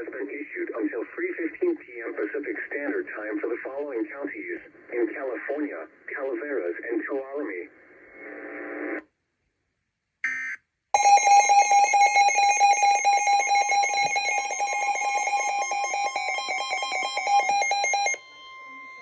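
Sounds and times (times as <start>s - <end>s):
loud steady alarm tone: 11.0s - 19.0s.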